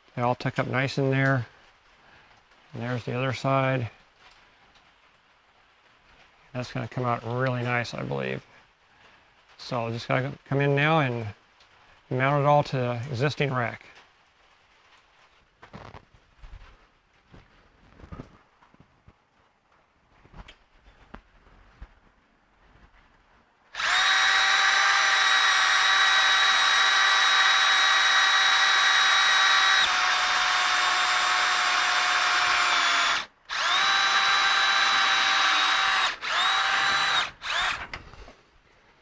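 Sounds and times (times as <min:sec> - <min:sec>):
power drill whining: 0:23.8 - 0:38.0.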